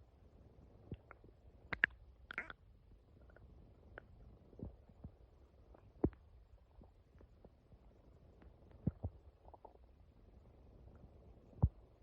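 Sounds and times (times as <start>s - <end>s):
stomach gurgling: 0.8s - 7.6s, 8.3s - 10.1s.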